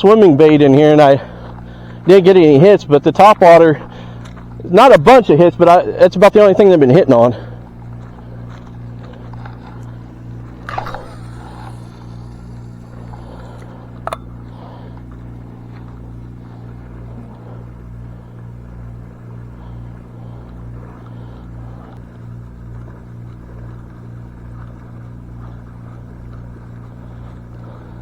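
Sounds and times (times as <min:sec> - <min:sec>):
low motor hum: 0:00.0 - 0:28.0.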